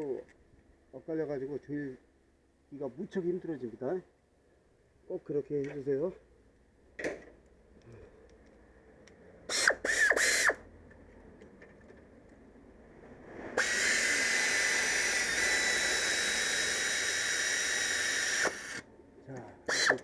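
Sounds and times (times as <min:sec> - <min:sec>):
cordless power driver whining: 0:09.5 - 0:10.6, 0:13.6 - 0:18.9, 0:19.7 - 0:20.0.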